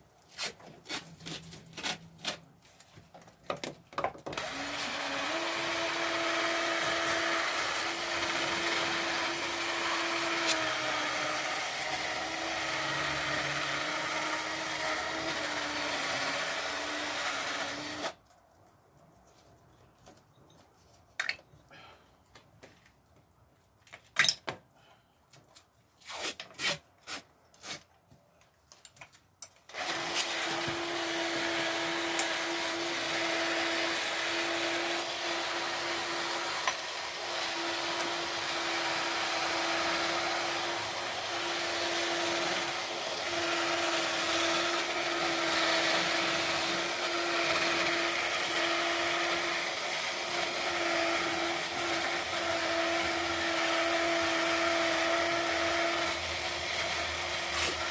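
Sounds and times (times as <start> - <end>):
tools clicking and knocking: 23.9 - 24.6.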